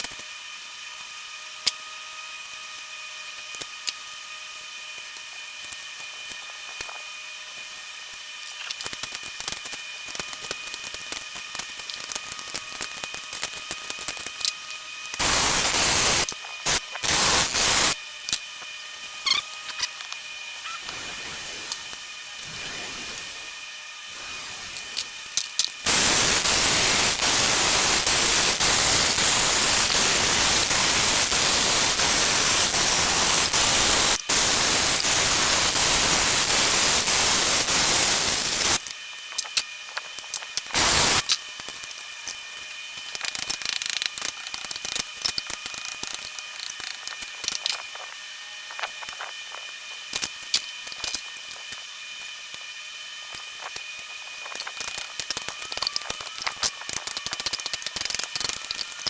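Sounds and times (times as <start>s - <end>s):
loud steady hiss: 15.2s - 18.0s, 20.8s - 38.8s, 40.7s - 41.2s.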